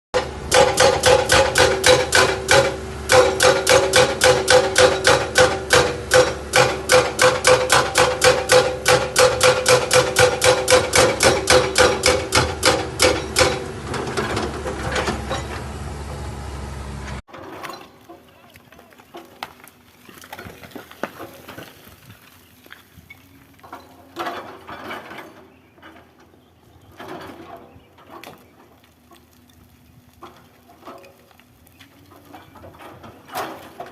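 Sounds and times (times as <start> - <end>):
hydraulic rock breaker hammering rock: 0.2 - 16.3.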